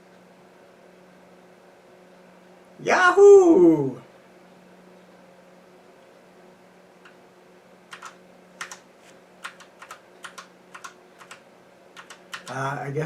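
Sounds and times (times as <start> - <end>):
steady low hum: 0.0 - 13.0
computer keyboard keys clicking: 7.9 - 8.8, 9.4 - 11.4, 12.0 - 12.6.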